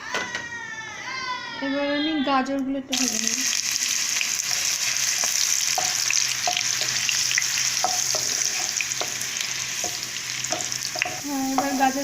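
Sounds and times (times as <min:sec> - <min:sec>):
vegetables sizzling in hot oil: 0:02.9 - 0:12.0.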